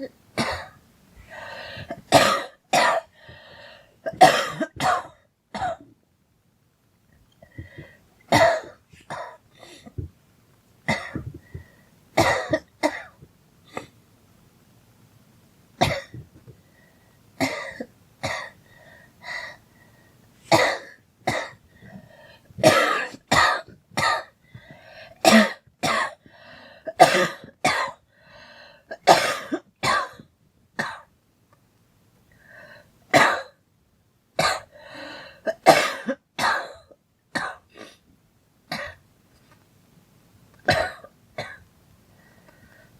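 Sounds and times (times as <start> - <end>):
girl coughing: 0.0 - 0.8, 1.8 - 3.1, 4.1 - 5.8, 8.3 - 10.0, 12.2 - 13.1, 22.6 - 24.3, 25.2 - 26.2, 26.9 - 28.0, 29.0 - 30.2, 35.5 - 38.0, 40.7 - 41.6.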